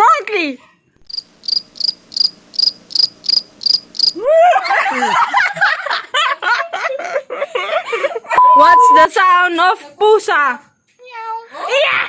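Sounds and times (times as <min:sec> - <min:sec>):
cricket chirps: 0:01.1 - 0:04.2.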